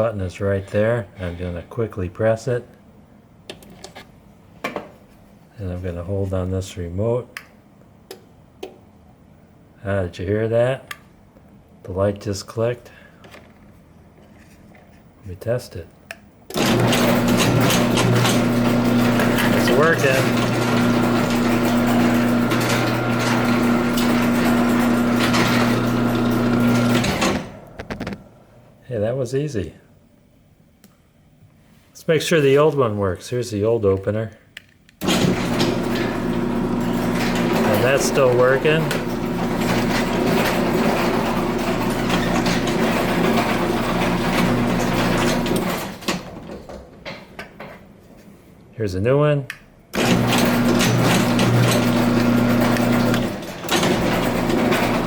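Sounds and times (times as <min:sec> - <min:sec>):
garage door opener motor humming: 0:16.5 - 0:28.5, 0:35.0 - 0:46.9, 0:49.9 - 0:55.0.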